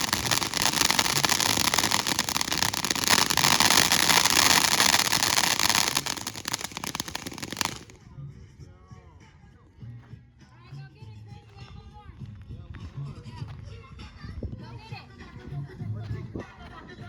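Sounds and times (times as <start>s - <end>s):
firework hissing and crackling: 0.0s - 8.0s.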